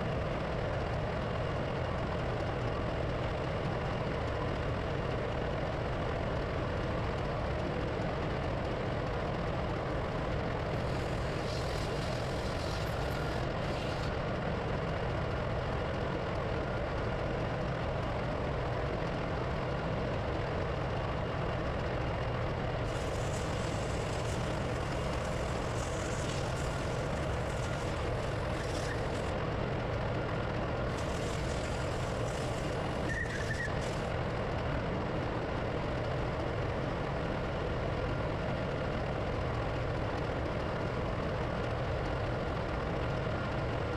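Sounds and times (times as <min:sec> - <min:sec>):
diesel machinery drone: 0:00.0 - 0:43.9
hissing or rattling: 0:22.9 - 0:29.3, 0:30.9 - 0:34.1.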